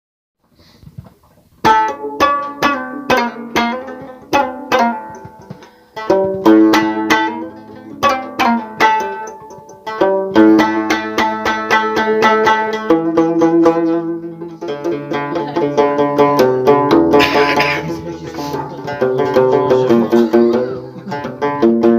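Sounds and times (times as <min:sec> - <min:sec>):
plucked banjo-like melody: 0:00.9 - 0:21.9
strummed accompaniment: 0:01.0 - 0:21.9.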